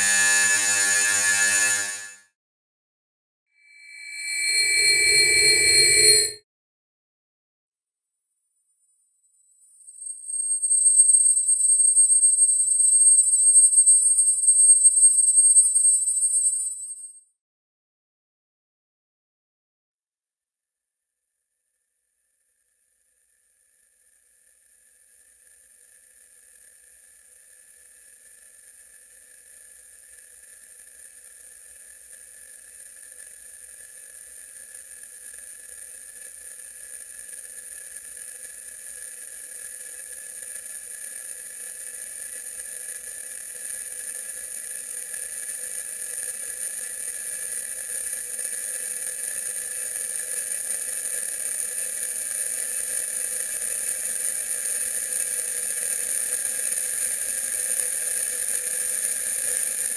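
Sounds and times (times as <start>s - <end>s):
machine-like whirring drone: 3.7s - 6.4s.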